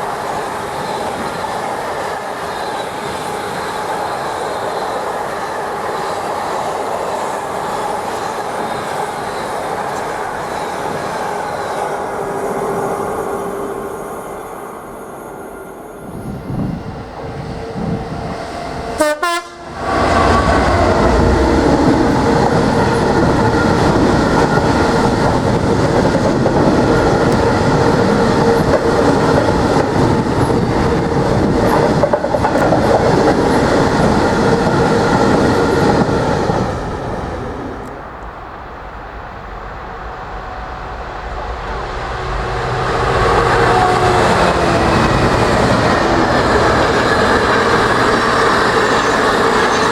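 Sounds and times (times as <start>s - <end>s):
freight train wheels rattling: 16.1s - 49.9s
train horn: 17.8s - 24.7s, 39.8s - 49.9s.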